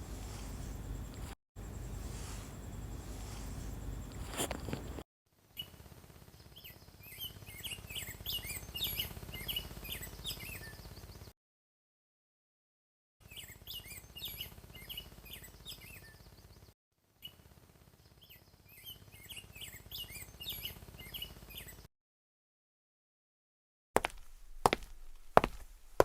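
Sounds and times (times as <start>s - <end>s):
low background rumble: 0.0s - 5.0s
small birds chirping: 0.0s - 5.0s, 6.4s - 11.3s, 13.2s - 17.4s, 18.0s - 21.9s.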